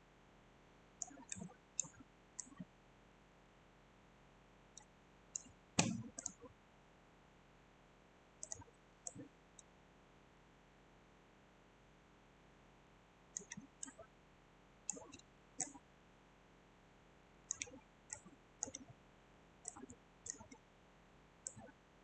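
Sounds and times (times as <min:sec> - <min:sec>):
computer mouse clicking: 0:01.0 - 0:02.7, 0:04.8 - 0:06.5, 0:08.4 - 0:09.7, 0:13.4 - 0:14.1, 0:14.9 - 0:15.8, 0:17.5 - 0:19.0, 0:19.6 - 0:20.6, 0:21.4 - 0:21.8.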